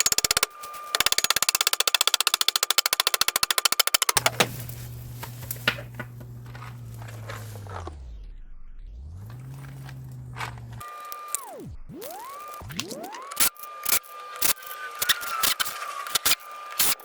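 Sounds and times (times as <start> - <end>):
impact driver rattling: 0.0 - 4.6
low steady hum: 4.2 - 10.8.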